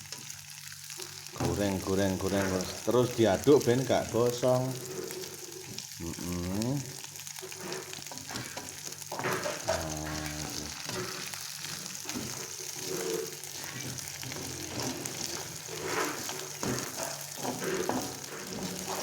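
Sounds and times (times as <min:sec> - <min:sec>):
shrimp sizzling in hot oil: 0:00.0 - 0:19.0
scraping while stirring: 0:04.5 - 0:05.9, 0:07.2 - 0:19.0.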